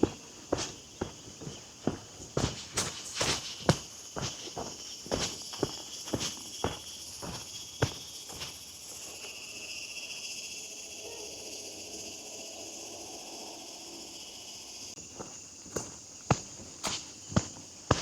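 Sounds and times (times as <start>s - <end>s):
footsteps on a path: 0.0s - 9.3s, 15.0s - 18.0s
high-pitched insect chorus: 0.0s - 18.0s.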